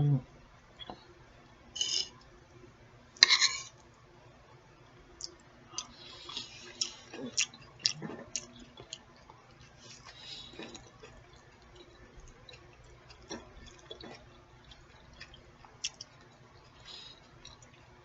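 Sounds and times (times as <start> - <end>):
wet mouth chewing clicks: 5.2 - 17.8.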